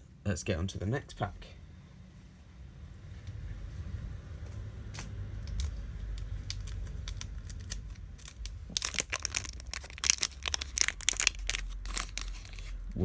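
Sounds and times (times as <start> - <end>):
foil wrapper crinkling and tearing: 5.4 - 13.0.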